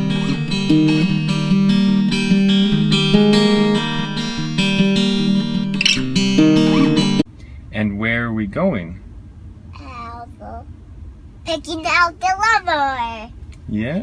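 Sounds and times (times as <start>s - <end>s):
strummed acoustic guitar: 0.0s - 7.3s.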